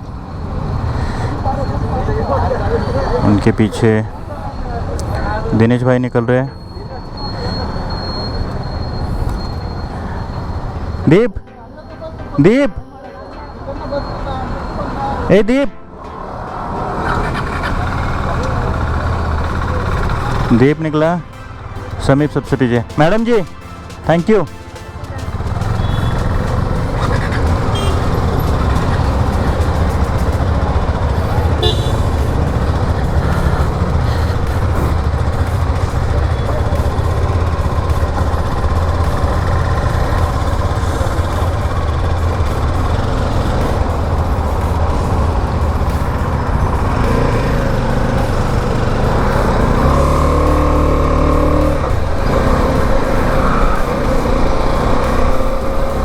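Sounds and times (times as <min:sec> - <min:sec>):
road noise: 0:00.0 - 0:56.0
steady pitched tone: 0:01.5 - 0:56.0
horn toot: 0:07.3 - 0:56.0
motorcycle engine running: 0:16.6 - 0:22.4, 0:23.1 - 0:56.0.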